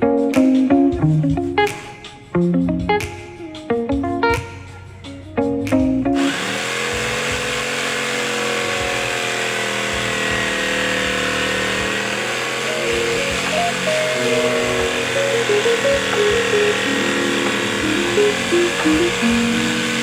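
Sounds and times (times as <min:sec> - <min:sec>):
guitar music: 0:00.0 - 0:20.0
palm router running: 0:06.2 - 0:20.0.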